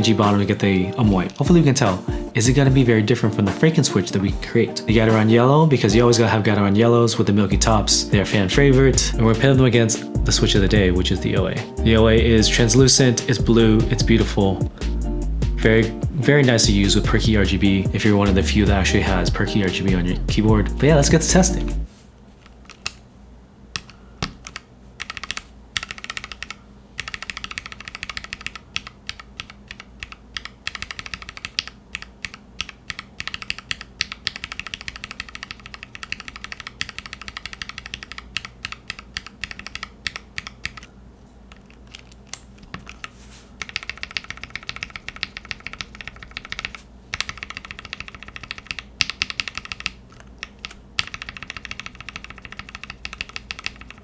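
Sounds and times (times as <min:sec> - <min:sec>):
mechanical keyboard typing: 0:23.8 - 0:40.9, 0:41.5 - 0:54.0.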